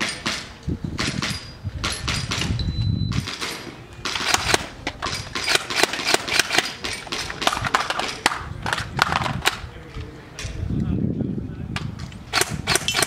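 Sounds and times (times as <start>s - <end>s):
shot timer beep: 2.6s - 3.2s
rapid airsoft gun shots: 3.1s - 9.6s, 12.3s - 13.0s.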